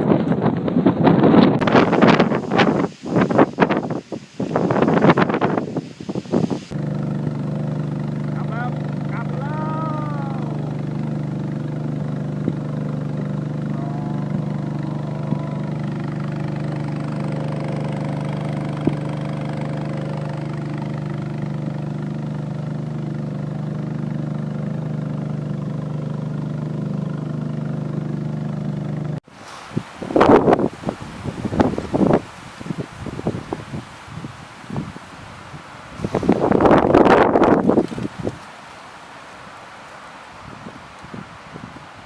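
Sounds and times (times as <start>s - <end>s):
wind on microphone: 0.0s - 27.2s, 29.4s - 38.5s, 40.3s - 42.0s
boat engine running: 0.0s - 29.2s.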